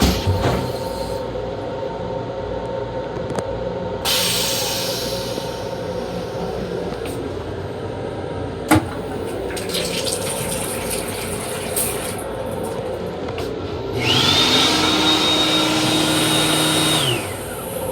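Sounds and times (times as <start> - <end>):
train rumbling: 0.0 - 1.7
water running from sink faucet: 8.8 - 13.0.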